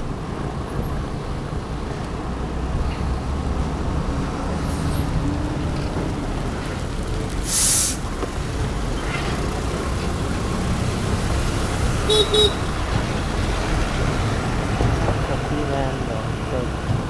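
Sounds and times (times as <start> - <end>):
road traffic rumble: 0.0 - 17.0
loud short hiss: 7.5 - 8.0
vehicle horn beeps: 12.0 - 12.8.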